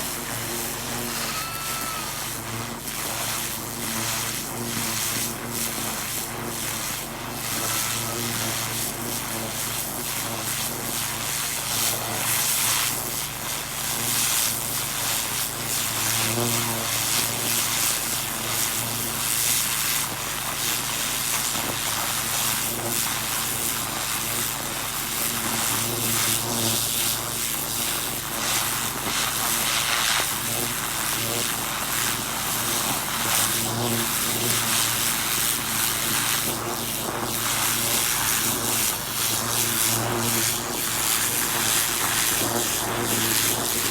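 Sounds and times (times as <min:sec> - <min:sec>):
pressure washer motor humming: 0:31.6 - 0:43.9.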